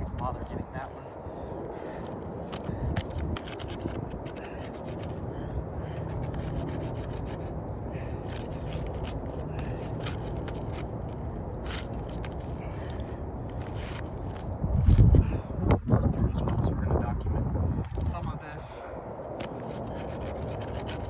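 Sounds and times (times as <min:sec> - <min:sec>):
steady low rumble: 0:00.0 - 0:21.0
scraping on roof shingles: 0:02.0 - 0:15.3, 0:19.3 - 0:21.0.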